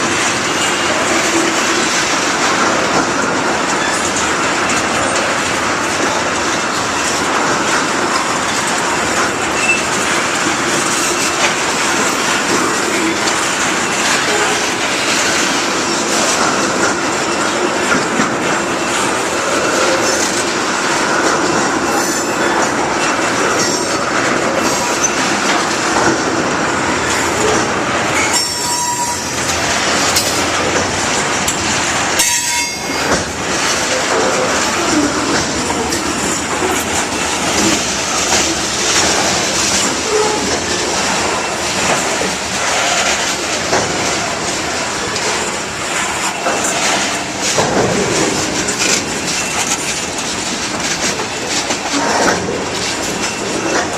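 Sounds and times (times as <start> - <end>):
train wheels clattering over rail joints: 0.0 - 53.9
high wheel squeals: 9.5 - 10.0, 28.2 - 29.5.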